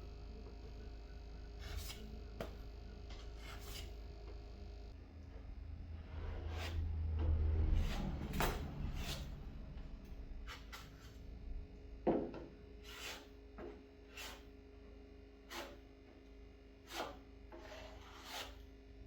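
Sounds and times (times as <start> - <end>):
low hum: 0.0 - 12.6
sandpaper scraping over filler: 3.2 - 3.9, 6.1 - 6.9, 7.6 - 9.4, 12.8 - 13.3, 14.0 - 14.5, 15.5 - 15.8, 16.8 - 18.6.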